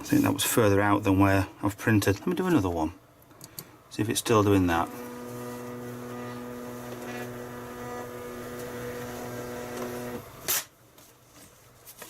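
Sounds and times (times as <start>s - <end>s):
printer feed motor whine: 4.6s - 10.5s.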